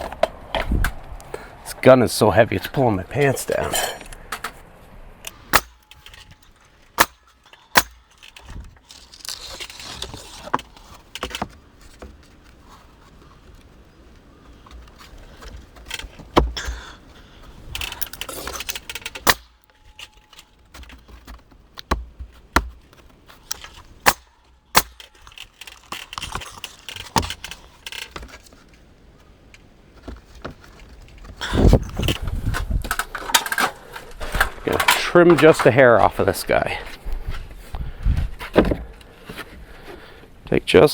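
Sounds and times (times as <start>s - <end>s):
metallic rattling and handling: 3.2s - 13.8s, 14.5s - 36.2s
nail gun shots: 5.5s - 6.0s, 7.0s - 8.1s, 19.2s - 19.7s, 23.5s - 25.2s.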